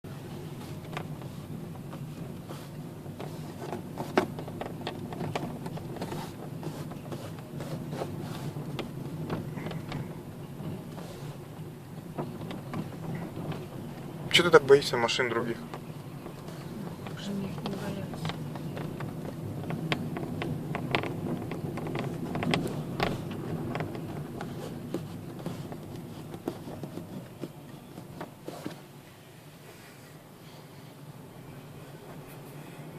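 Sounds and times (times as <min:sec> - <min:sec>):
road noise hum in car cabin: 0:00.0 - 0:32.9
dashboard plastic creaking and ticking: 0:00.6 - 0:28.9.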